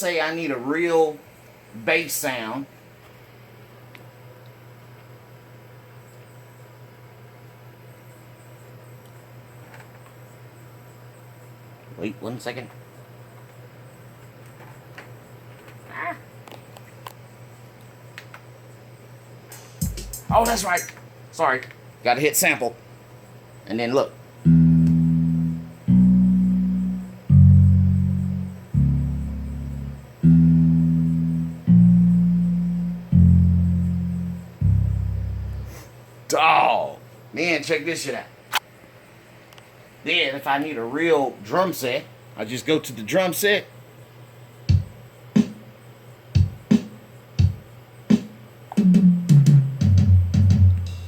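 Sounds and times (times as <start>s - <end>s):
synthesized bass notes: 24.5s - 35.8s, 50.0s - 51.0s.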